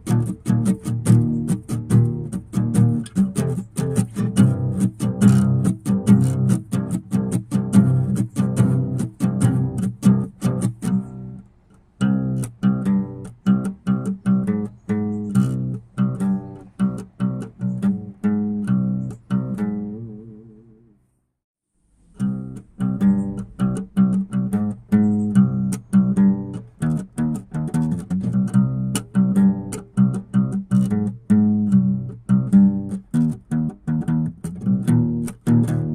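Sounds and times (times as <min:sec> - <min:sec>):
plucked instrumental music: 0:00.0 - 0:21.0, 0:22.0 - 0:35.9.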